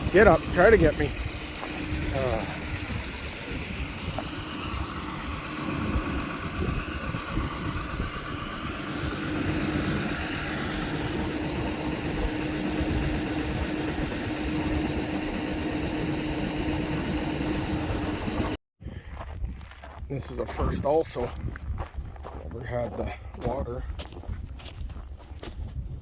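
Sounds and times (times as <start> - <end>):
vehicle engine idling: 0.0 - 18.6
wind on microphone: 0.0 - 22.6, 23.3 - 26.0.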